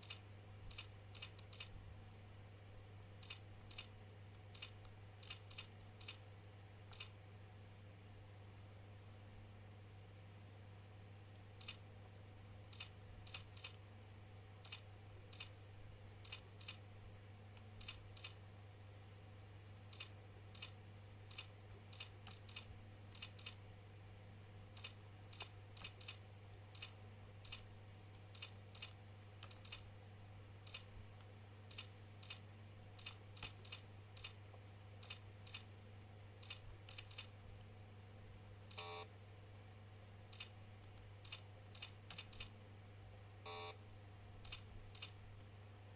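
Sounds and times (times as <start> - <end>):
keyboard keystroke clicks: 0.0 - 1.7, 3.2 - 6.2, 6.9 - 7.1, 11.6 - 11.8, 12.7 - 13.8, 14.6 - 15.5, 16.2 - 16.8, 17.6 - 18.4, 19.9 - 23.6, 24.8 - 26.2, 28.3 - 29.8, 31.7 - 32.4, 33.0 - 34.4, 35.0 - 35.7, 36.4 - 37.3, 40.3 - 40.5, 41.2 - 42.5, 44.4 - 45.2
steady low hum: 0.0 - 45.9
short buzzing tone: 38.8 - 39.1, 43.5 - 43.8.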